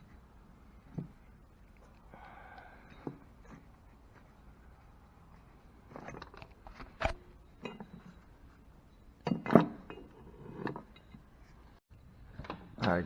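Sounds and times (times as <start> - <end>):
metal tools clinking on engine: 7.5 - 11.3.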